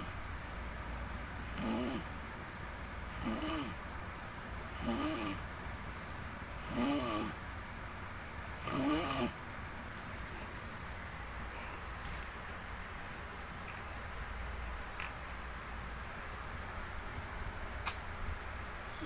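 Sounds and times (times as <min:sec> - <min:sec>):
short pitched snores: 0:01.5 - 0:02.1, 0:03.2 - 0:03.8, 0:04.8 - 0:05.4, 0:06.6 - 0:07.4, 0:08.6 - 0:09.4.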